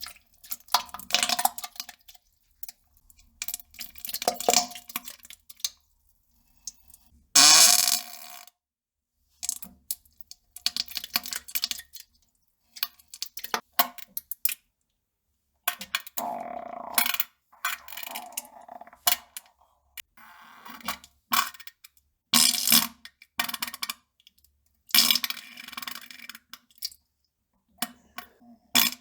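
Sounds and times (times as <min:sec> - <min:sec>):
farts: 0:16.2 - 0:19.4.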